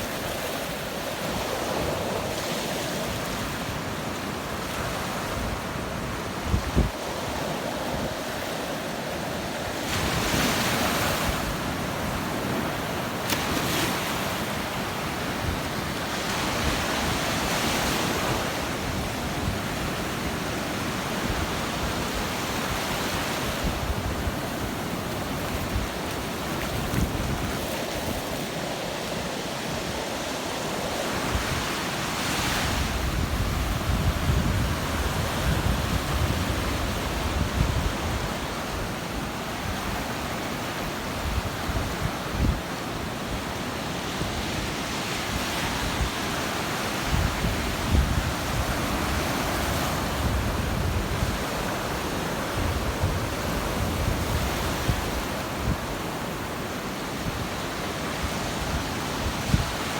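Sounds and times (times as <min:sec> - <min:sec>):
ocean surf breaking: 0:00.0 - 0:59.9
wind buffeting microphone: 0:04.6 - 0:08.6, 0:15.4 - 0:39.0, 0:47.0 - 0:56.1, 0:58.2 - 0:59.9.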